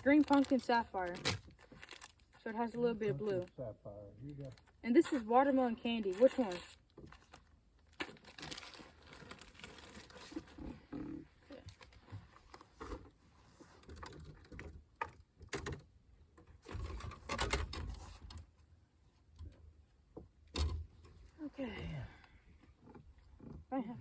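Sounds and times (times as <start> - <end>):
rustling and rumble: 8.1 - 15.0.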